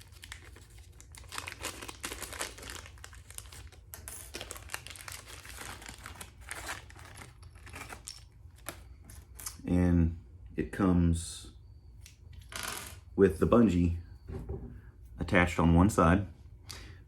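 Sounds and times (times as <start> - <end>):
plastic bag crinkling: 0.0 - 9.4.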